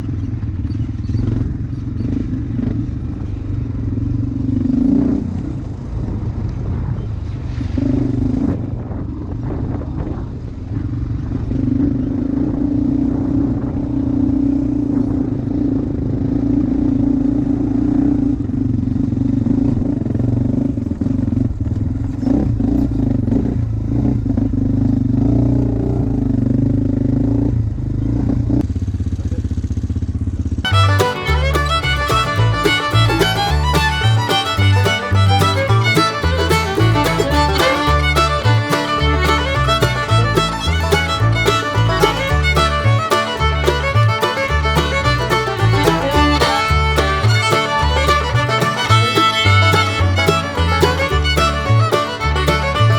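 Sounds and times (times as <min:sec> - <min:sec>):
vehicle engine droning: 0:10.4 - 0:52.9.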